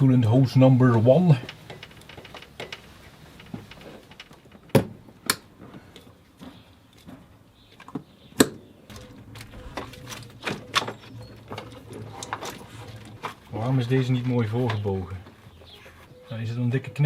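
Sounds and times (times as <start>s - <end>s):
hands handling hose and clamps: 0.9s - 7.2s, 8.9s - 16.2s.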